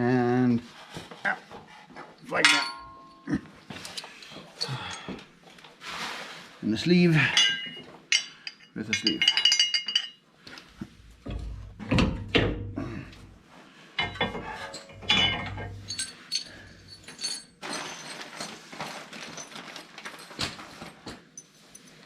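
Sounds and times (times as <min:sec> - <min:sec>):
metal tools clinking and knocking: 0:02.3 - 0:05.2, 0:07.2 - 0:12.7, 0:14.0 - 0:18.6.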